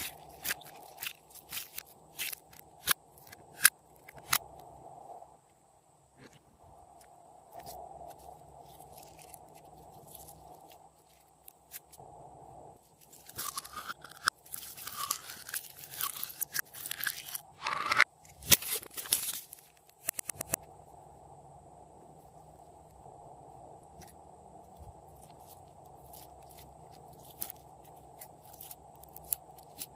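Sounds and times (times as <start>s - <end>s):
slime squishing and crackling: 0.0s - 3.6s, 13.0s - 17.6s, 25.2s - 29.9s.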